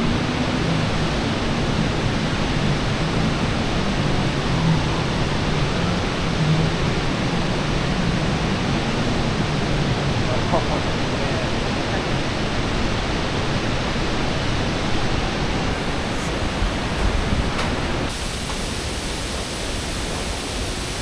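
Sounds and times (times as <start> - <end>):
waterfall roaring: 10.0 - 21.0.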